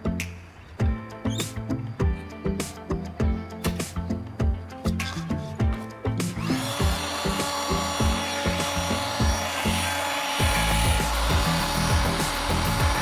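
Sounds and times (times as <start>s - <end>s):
background music: 0.0s - 13.0s
power tool grinding: 5.0s - 13.0s.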